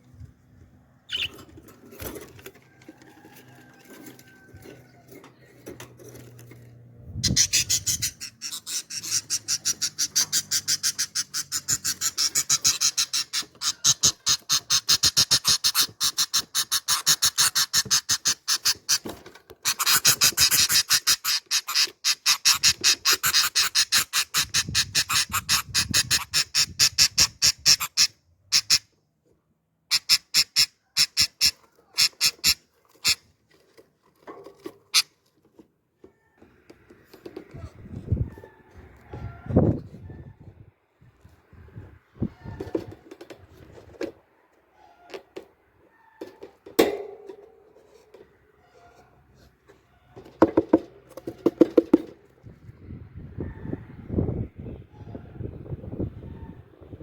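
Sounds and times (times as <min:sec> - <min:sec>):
faint bird sounds: 0:00.8 - 0:01.6
baby birds cheeping: 0:01.1 - 0:01.5, 0:07.1 - 0:28.9, 0:29.9 - 0:33.2.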